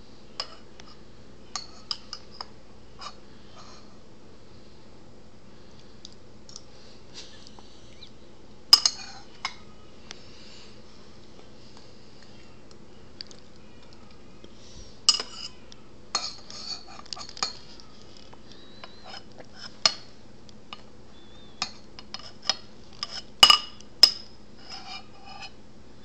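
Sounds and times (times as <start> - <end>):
spoon clinking against a bowl: 1.5 - 2.5, 8.7 - 9.6, 15.1 - 17.6, 21.6 - 24.3.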